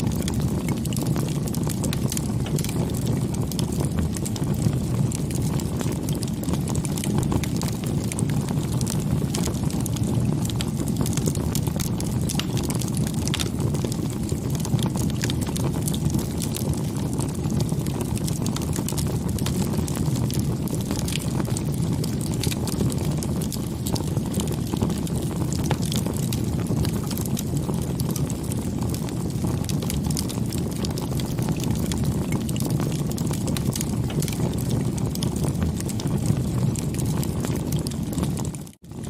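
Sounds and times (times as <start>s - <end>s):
wood fire crackling and popping: 0.0s - 39.0s.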